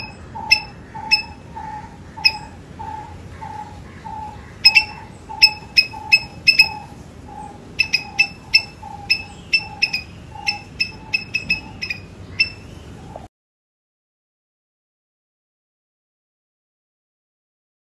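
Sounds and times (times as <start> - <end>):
squirrel barking: 0.0 - 13.3.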